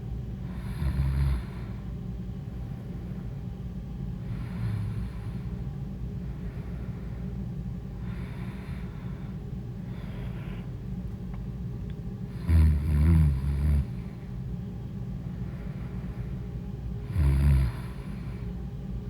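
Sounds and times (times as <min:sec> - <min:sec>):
soft sleeping breaths: 0:00.4 - 0:02.0, 0:04.2 - 0:10.9, 0:12.2 - 0:14.4, 0:15.2 - 0:18.6
loud rough snore: 0:12.4 - 0:13.9, 0:17.1 - 0:18.0.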